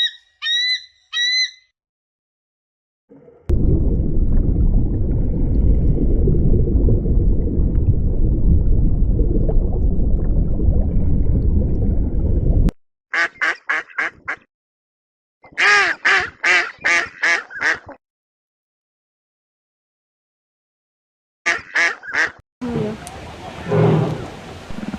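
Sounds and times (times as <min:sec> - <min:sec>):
steady low noise: 0:03.5 - 0:12.7
duck quacking: 0:13.1 - 0:14.4, 0:15.5 - 0:18.0, 0:21.5 - 0:22.4.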